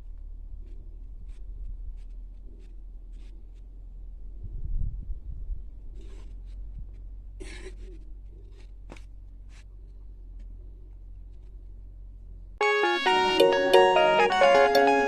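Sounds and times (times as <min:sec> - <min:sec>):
faint rustles and clicks: 0:00.0 - 0:03.9, 0:05.8 - 0:12.2
guitar music: 0:12.6 - 0:15.0.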